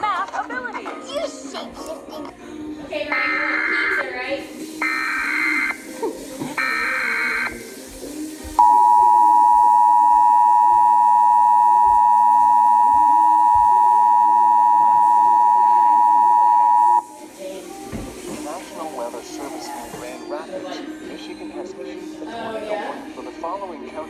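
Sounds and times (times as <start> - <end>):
two-tone alert tone: 8.6 - 17.0.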